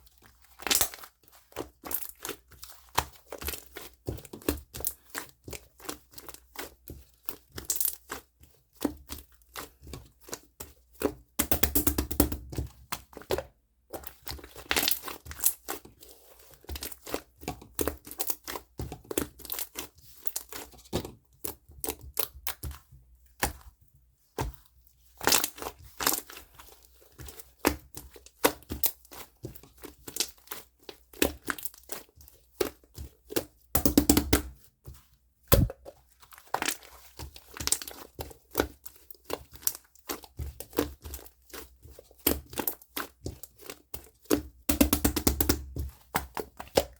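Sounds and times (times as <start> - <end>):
slime squished by hand: 35.5 - 46.9.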